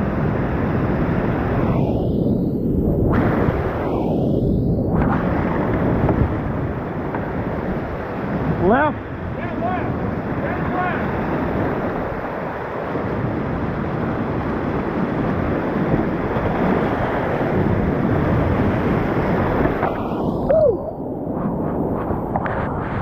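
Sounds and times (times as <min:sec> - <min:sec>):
wind buffeting microphone: 0:00.0 - 0:23.0
whitewater rushing: 0:06.8 - 0:15.5.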